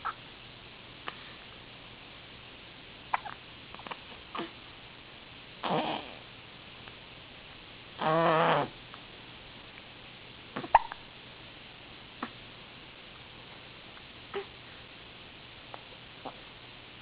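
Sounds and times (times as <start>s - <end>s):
hiccups: 3.1s - 4.6s, 10.6s - 11.0s, 14.3s - 14.5s.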